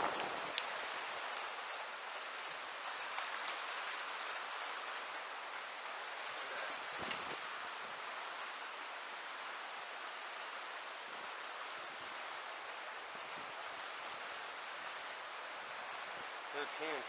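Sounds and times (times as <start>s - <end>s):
river current rushing: 0.0s - 17.0s.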